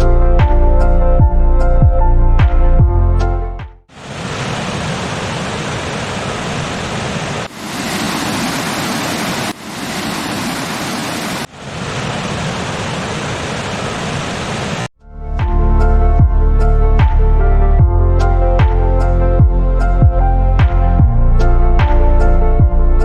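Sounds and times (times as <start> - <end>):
background music: 0.0 - 3.8, 15.0 - 23.0
waterfall roaring: 3.9 - 14.9.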